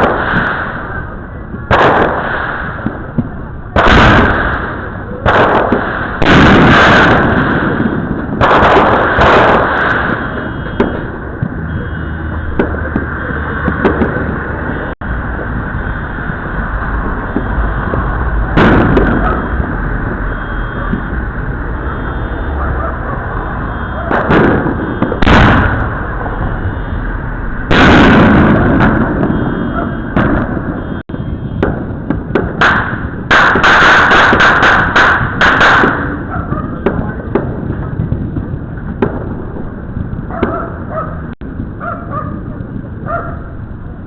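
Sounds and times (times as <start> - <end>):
fireworks crackling: 0.0 - 41.8
big firework blast: 0.0 - 44.0
distant fireworks: 0.0 - 44.0
fireworks bangs: 0.0 - 44.0
small firework pops: 1.7 - 11.6, 17.3 - 19.5, 31.6 - 39.3.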